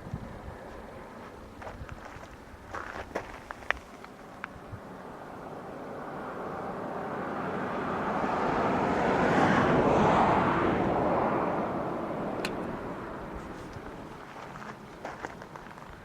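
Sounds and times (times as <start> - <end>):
vehicle passing by: 4.1 - 15.9.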